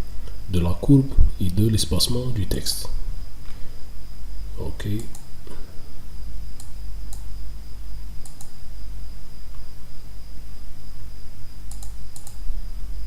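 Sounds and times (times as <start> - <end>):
faint high whine: 0.0 - 13.0
low electrical hum: 0.0 - 13.0
computer mouse clicks: 5.0 - 5.3, 6.6 - 7.3, 8.2 - 8.6, 11.7 - 12.4.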